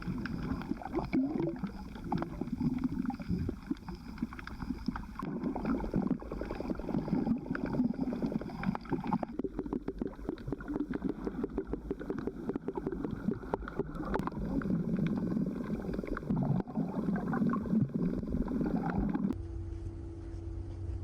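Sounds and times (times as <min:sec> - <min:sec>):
churning gurgling water: 0:00.0 - 0:19.4
steady low hum: 0:00.0 - 0:21.0.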